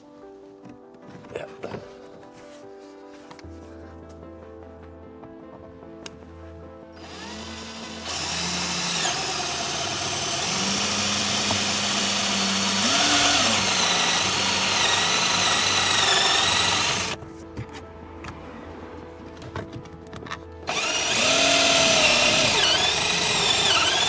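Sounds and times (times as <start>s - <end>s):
power drill boring a hole: 7.0s - 17.2s, 20.7s - 24.0s.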